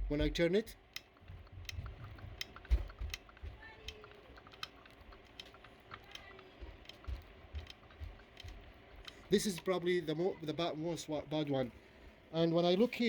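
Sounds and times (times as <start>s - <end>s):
bicycle chain clicking: 0.4s - 10.2s.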